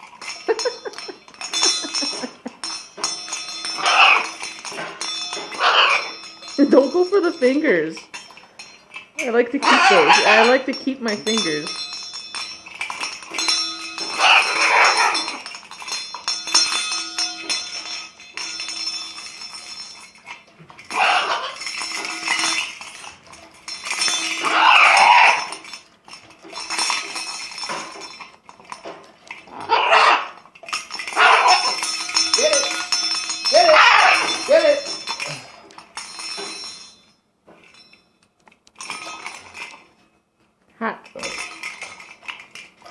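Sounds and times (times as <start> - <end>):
noisemaker jingling: 0.0 - 40.2, 41.0 - 42.9.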